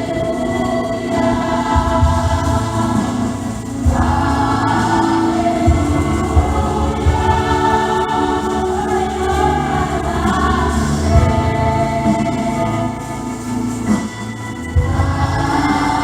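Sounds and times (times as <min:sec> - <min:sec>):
choir singing: 0:00.0 - 0:16.0
musical accompaniment with bass: 0:00.0 - 0:16.0.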